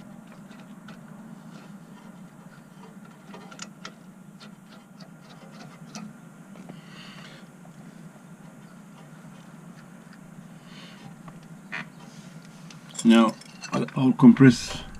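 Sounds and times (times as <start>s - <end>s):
steady low hum: 0.0s - 14.9s.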